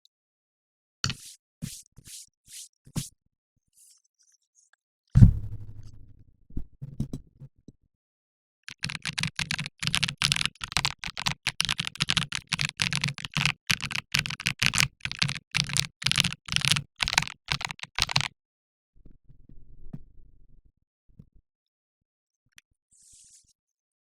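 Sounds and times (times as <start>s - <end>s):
typing on mechanical keyboard: 8.7s - 18.3s.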